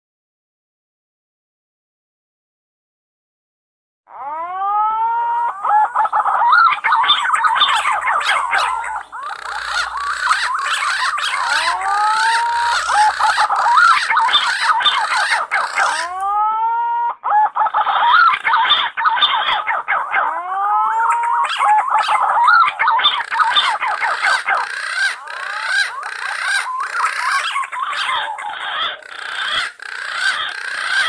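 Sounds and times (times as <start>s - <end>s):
pigeons whistling: 4.7s - 31.0s.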